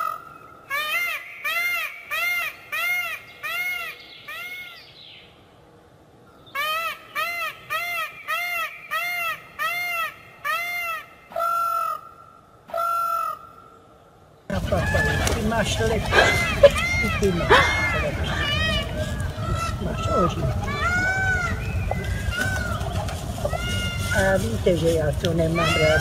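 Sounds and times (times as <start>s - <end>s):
peacock honking calls: 0.0s - 4.8s, 6.6s - 13.5s, 14.5s - 26.0s.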